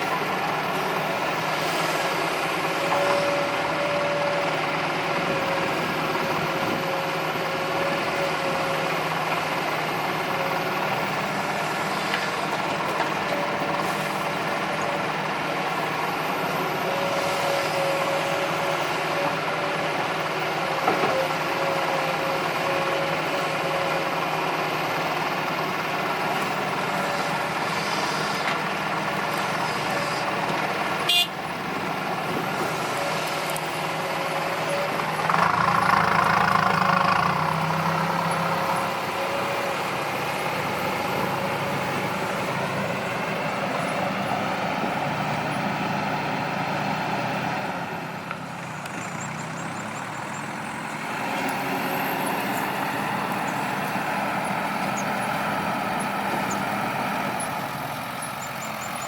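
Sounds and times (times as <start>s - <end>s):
heavy diesel machinery running: 0.0s - 59.0s.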